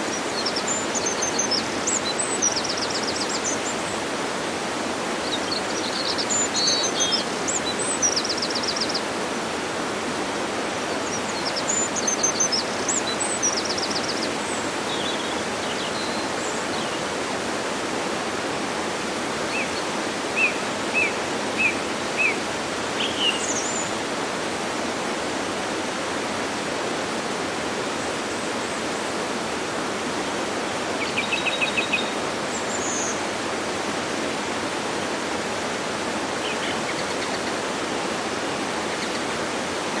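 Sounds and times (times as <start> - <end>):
waterfall rushing: 0.0 - 40.0
birds chirping and trilling: 38.7 - 39.6.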